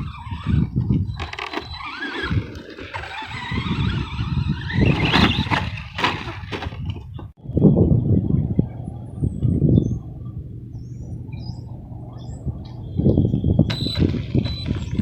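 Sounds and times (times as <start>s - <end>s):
electric motor whining: 0.0s - 7.0s, 12.2s - 15.0s
gusting low rumble: 2.2s - 15.0s.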